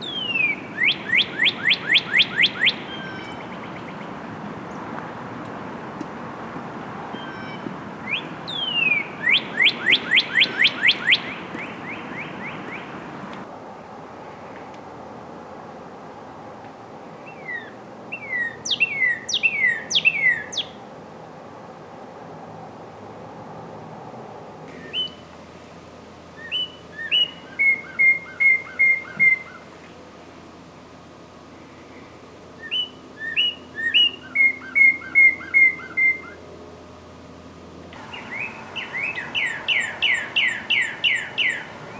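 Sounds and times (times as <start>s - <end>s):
bird singing whistles and chirps: 0.0s - 4.1s, 7.2s - 12.9s, 17.3s - 20.8s, 24.8s - 25.3s, 26.4s - 29.6s, 32.6s - 36.4s, 38.0s - 41.9s.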